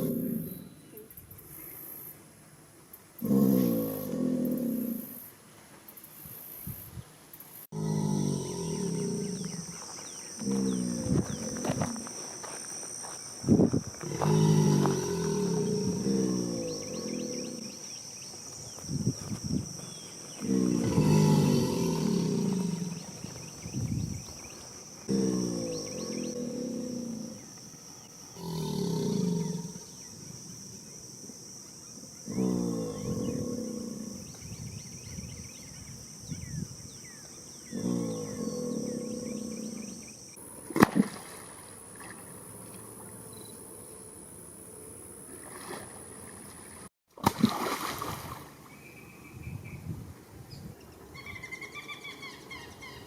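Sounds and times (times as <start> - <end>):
alligator bellowing: 0.0 - 0.8, 3.2 - 5.2, 7.7 - 9.8, 10.4 - 12.1, 14.0 - 17.8, 20.4 - 23.4, 25.0 - 27.5, 28.4 - 30.0, 32.2 - 34.3, 37.6 - 40.1
sharp smack: 40.7 - 41.2.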